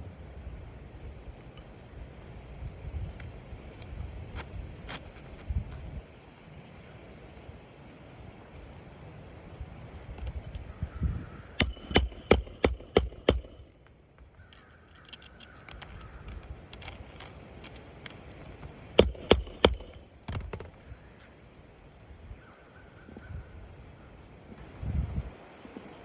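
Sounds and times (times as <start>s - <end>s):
hammer driving nails into shingles: 11.6s - 13.9s, 16.8s - 20.7s.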